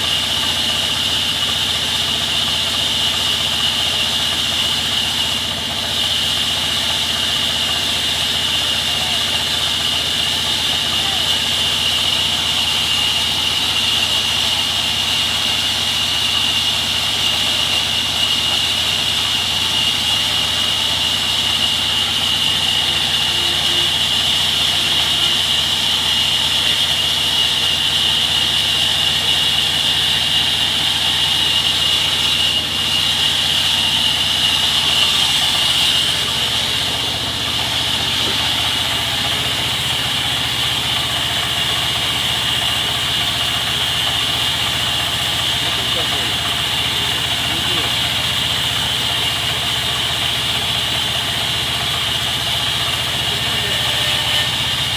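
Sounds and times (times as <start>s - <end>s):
loud high-pitched hiss: 0.0s - 54.9s
machinery engine hum: 0.0s - 54.9s.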